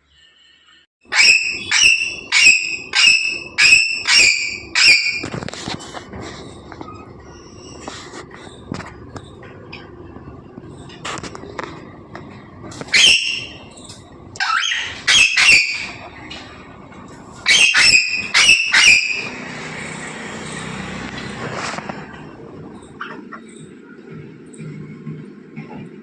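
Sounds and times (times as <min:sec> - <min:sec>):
parrot squawks and whistles: 0:01.1 - 0:05.3, 0:12.9 - 0:13.6, 0:14.4 - 0:16.0, 0:17.4 - 0:19.4.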